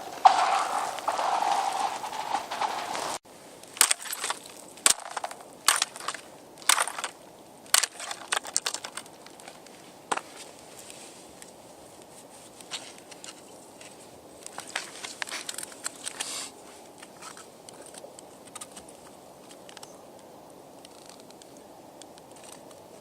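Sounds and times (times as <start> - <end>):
thin ice cracking: 3.7 - 10.2.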